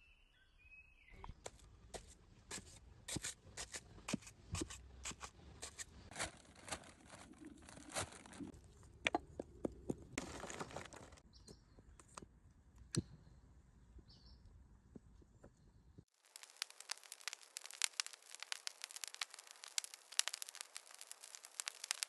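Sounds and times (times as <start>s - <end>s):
rustling tearing noise: 5.1s - 8.5s, 16.2s - 22.0s.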